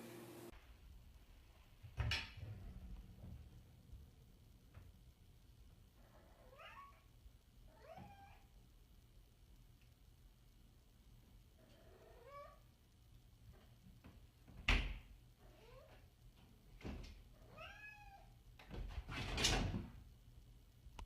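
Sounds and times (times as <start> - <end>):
cat meowing: 6.0 - 7.1, 7.7 - 8.5, 11.6 - 12.6, 17.4 - 18.3.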